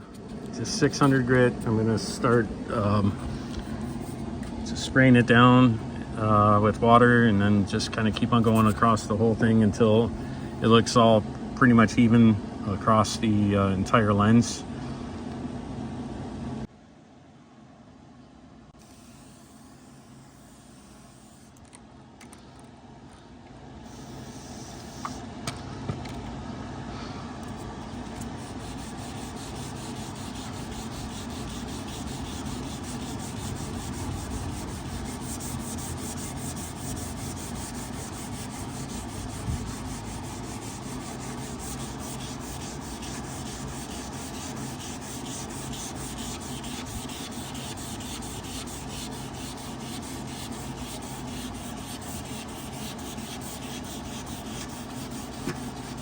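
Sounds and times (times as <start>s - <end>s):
wet sanding rubbing: 27.5s - 56.0s.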